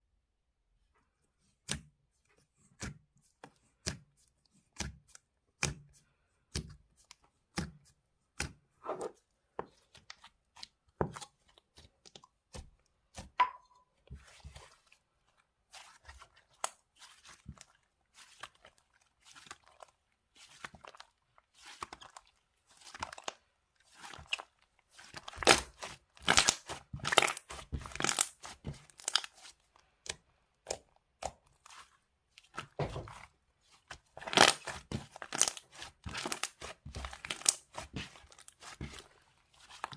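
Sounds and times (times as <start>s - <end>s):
slime tearing: 23.1s - 31.8s, 34.2s - 39.0s
slime crackling and popping: 25.1s - 29.5s, 34.2s - 39.0s.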